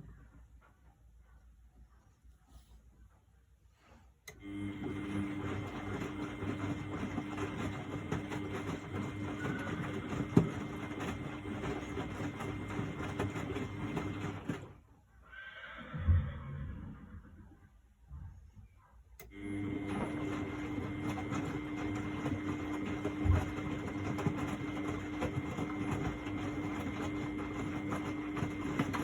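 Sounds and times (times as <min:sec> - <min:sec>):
washing machine running: 0:04.3 - 0:15.0, 0:19.2 - 0:29.0.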